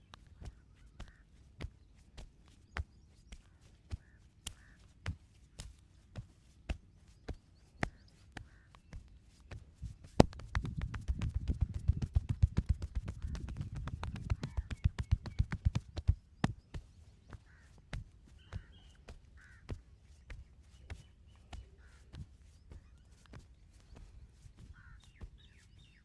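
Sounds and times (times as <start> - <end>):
hands slapping on a body: 2.7 - 6.8, 7.8 - 19.1.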